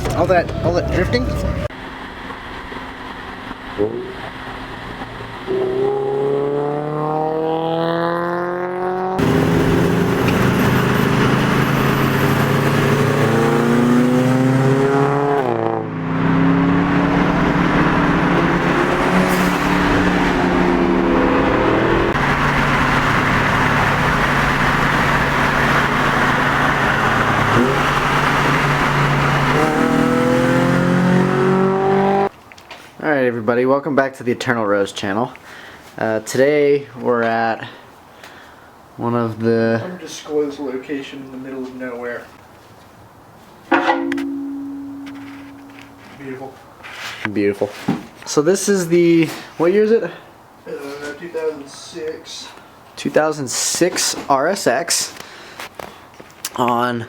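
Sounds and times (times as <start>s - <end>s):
car engines accelerating: 0.0s - 32.3s.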